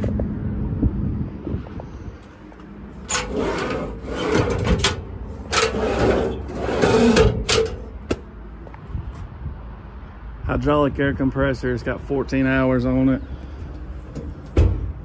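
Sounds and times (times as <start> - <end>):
long scraping rubs: 3.0 - 8.0.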